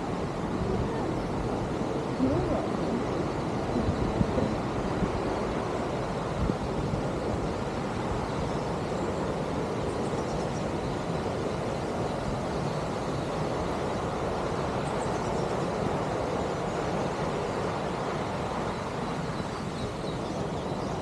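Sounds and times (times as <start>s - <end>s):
waterfall rushing: 0.0s - 6.2s.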